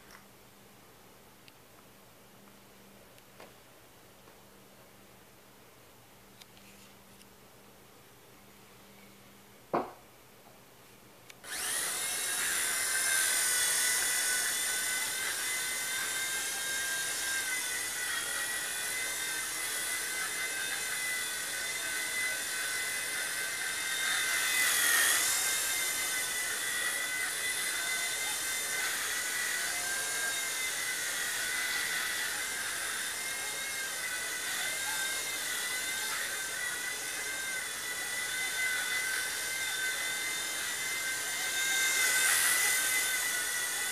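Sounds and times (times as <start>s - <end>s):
small electric motor whining: 11.4s - 43.9s.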